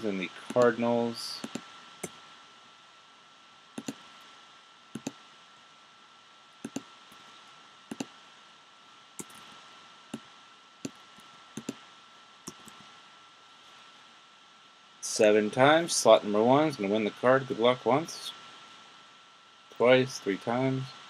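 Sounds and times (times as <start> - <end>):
faint high-pitched hum: 0.0 - 21.0
low steady hiss: 0.0 - 21.0
computer mouse clicking: 1.4 - 2.2, 3.8 - 4.1, 4.9 - 5.2, 6.6 - 7.2, 7.9 - 8.2, 9.2 - 9.5, 10.1 - 11.8, 12.4 - 12.8.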